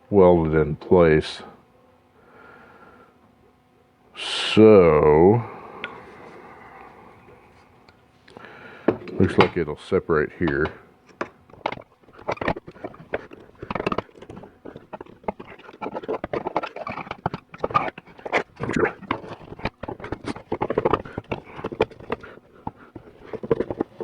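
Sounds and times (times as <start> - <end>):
metal parts clicking and scraping: 10.5 - 24.0.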